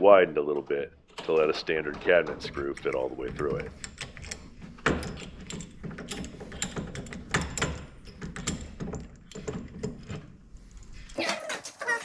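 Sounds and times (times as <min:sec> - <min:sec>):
clicks and knocks on wooden cabinets: 0:01.0 - 0:10.4.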